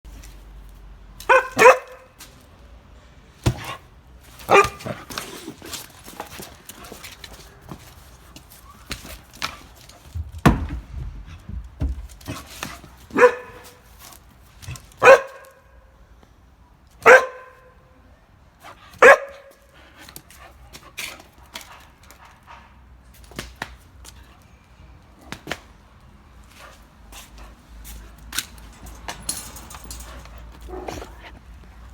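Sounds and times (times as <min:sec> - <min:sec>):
dog barking: 0:01.2 - 0:02.1, 0:04.5 - 0:05.0, 0:13.1 - 0:13.8, 0:15.0 - 0:15.7, 0:17.0 - 0:17.7, 0:19.0 - 0:19.5
knocks and rustles: 0:03.4 - 0:15.0, 0:27.2 - 0:31.9
heavy thump: 0:10.1 - 0:12.5.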